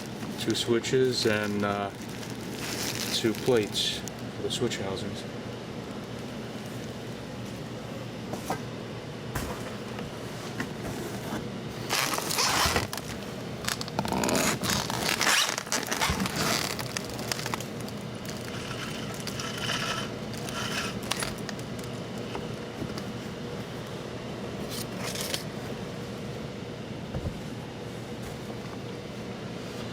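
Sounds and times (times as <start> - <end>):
packing scraping and rustling: 0.0 - 4.0, 10.2 - 21.6.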